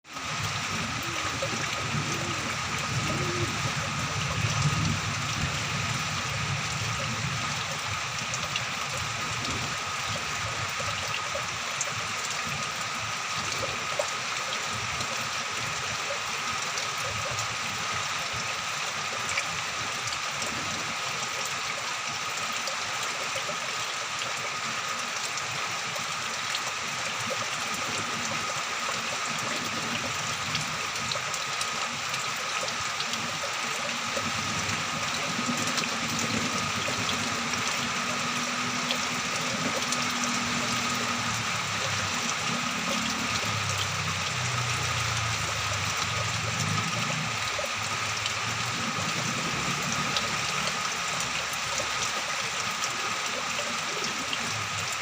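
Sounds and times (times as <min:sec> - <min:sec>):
steady rain hiss: 0:00.0 - 0:55.0
raindrop ticks: 0:03.0 - 0:03.5, 0:32.1 - 0:55.0.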